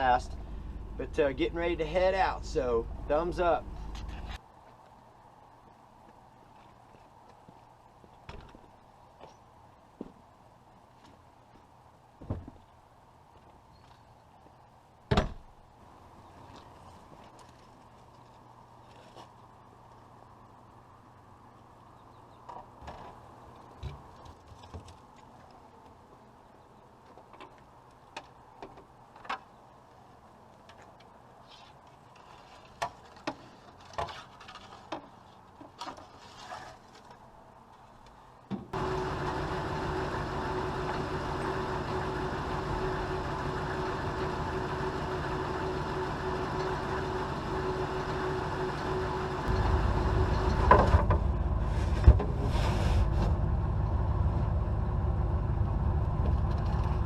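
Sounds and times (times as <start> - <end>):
motorhome engine running: 0.0 - 4.4, 38.8 - 57.0.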